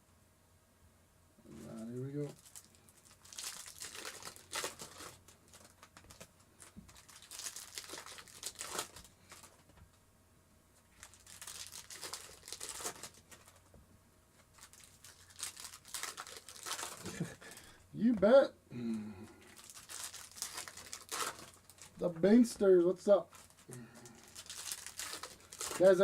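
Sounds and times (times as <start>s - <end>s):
foil wrappers crinkling and tearing: 1.6s - 9.8s, 10.8s - 13.7s, 14.3s - 17.8s, 19.4s - 22.6s, 23.2s - 26.0s.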